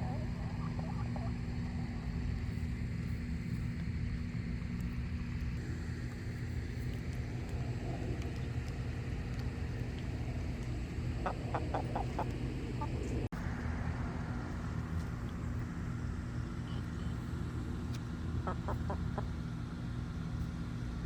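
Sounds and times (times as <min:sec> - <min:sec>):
hen clucking: 0:00.0 - 0:01.6, 0:11.2 - 0:13.2, 0:18.4 - 0:19.4
low rumble: 0:00.0 - 0:16.5.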